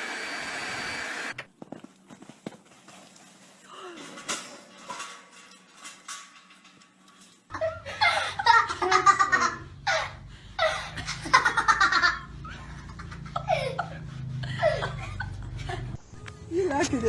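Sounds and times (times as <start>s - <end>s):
person laughing hard: 7.5s - 16.0s.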